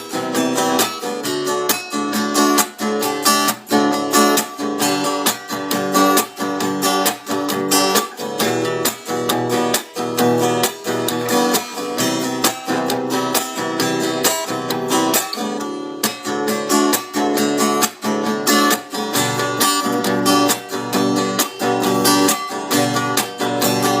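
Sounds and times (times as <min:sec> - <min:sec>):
acoustic guitar strumming chords: 0:00.0 - 0:24.0.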